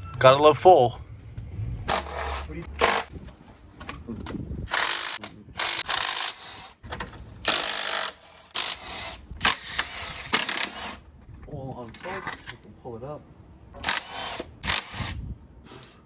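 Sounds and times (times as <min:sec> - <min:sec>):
ratchet wrench clicking: 0:04.7 - 0:06.5.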